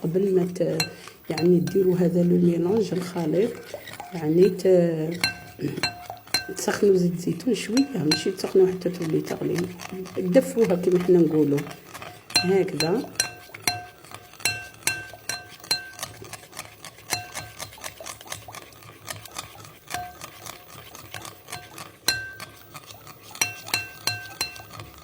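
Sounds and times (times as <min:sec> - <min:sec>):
spoon clinking against container: 0:00.7 - 0:02.2, 0:02.8 - 0:07.0, 0:07.6 - 0:09.2, 0:12.1 - 0:16.2, 0:17.1 - 0:17.6, 0:21.5 - 0:22.6, 0:23.4 - 0:25.0.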